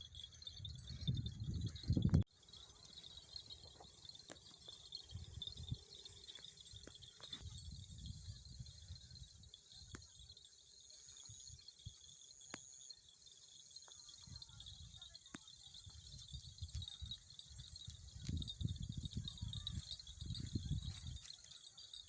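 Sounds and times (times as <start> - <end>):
insects chirping: 0.0 - 22.0.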